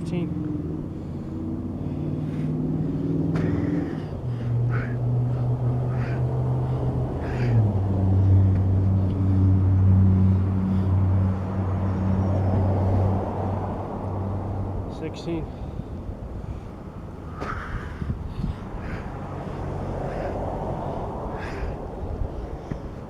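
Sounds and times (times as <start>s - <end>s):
engine humming: 0.0s - 23.0s.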